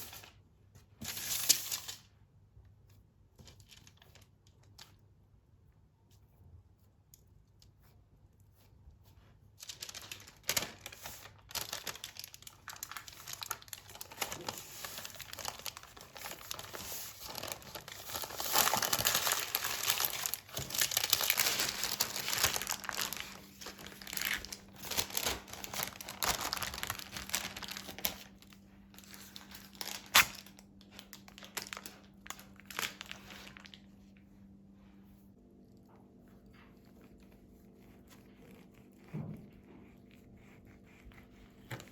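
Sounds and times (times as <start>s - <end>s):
packaging crinkling: 9.6s - 33.9s.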